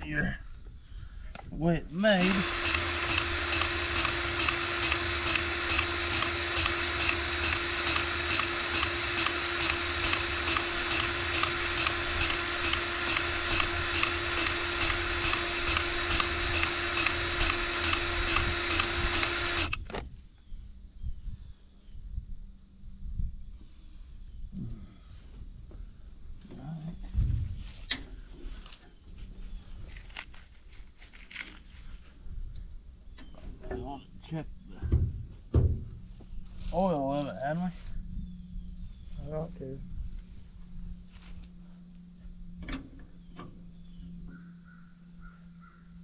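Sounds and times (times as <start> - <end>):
machine whining: 2.0 - 20.0
regular ticking: 2.2 - 19.9.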